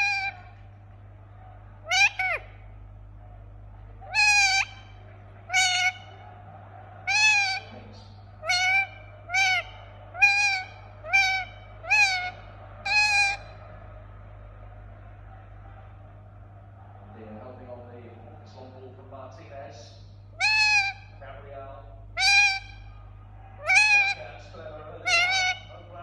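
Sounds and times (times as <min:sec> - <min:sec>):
parakeet calling: 0:00.0 - 0:00.7, 0:01.8 - 0:02.8, 0:04.0 - 0:06.4, 0:07.0 - 0:14.1, 0:20.3 - 0:21.3, 0:21.9 - 0:26.0.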